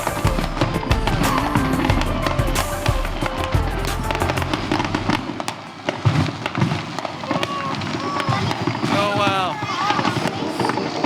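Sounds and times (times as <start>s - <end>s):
background music: 0.0s - 5.6s
fireworks popping and crackling: 0.0s - 11.0s.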